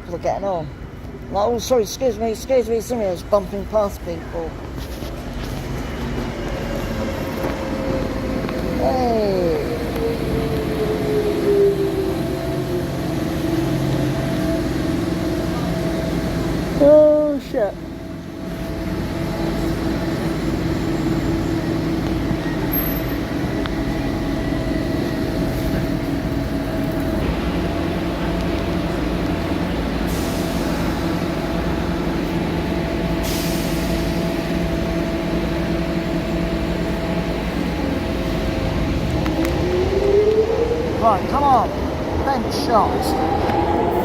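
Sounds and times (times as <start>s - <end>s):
train electrical equipment humming: 0.0s - 44.0s
rising whine: 5.1s - 17.0s, 17.9s - 44.0s
short air hisses: 33.2s - 34.2s.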